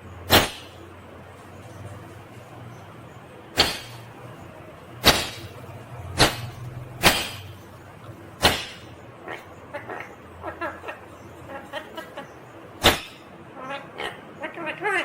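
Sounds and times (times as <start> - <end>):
parakeet chattering calls: 8.4 - 15.0
parakeet screeching: 9.2 - 12.2.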